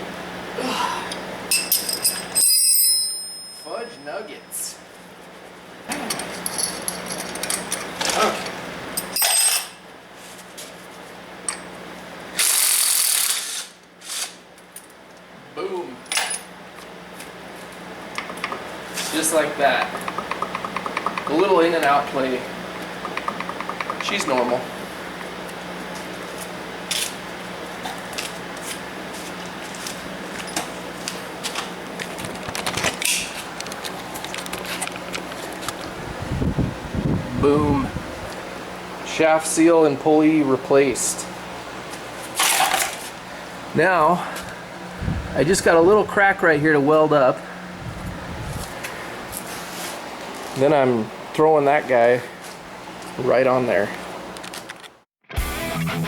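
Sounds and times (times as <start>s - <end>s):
steady low hum: 0.0s - 54.4s
ratchet wrench ratcheting: 12.4s - 14.4s.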